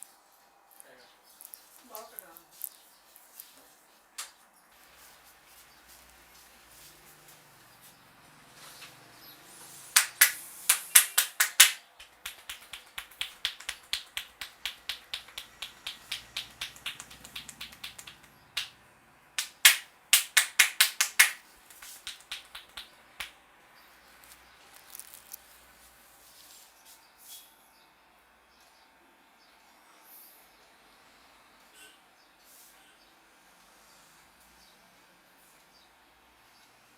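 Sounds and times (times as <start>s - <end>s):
sharp snapping hand clicks: 10.0s - 18.7s, 19.4s - 23.3s.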